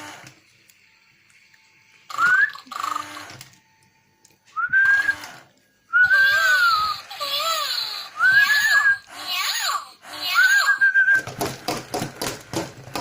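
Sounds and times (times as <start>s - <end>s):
robot cat toy electronic meows: 6.2s - 10.7s.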